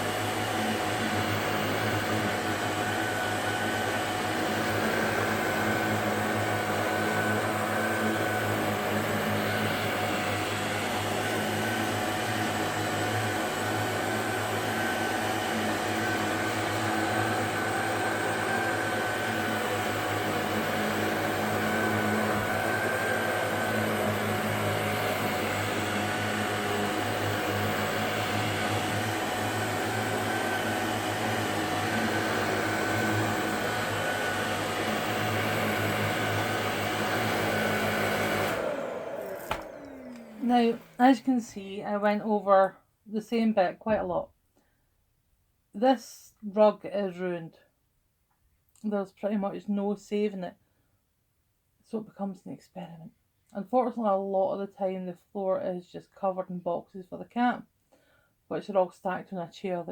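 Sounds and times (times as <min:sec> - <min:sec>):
vacuum cleaner whining: 0:00.0 - 0:41.7.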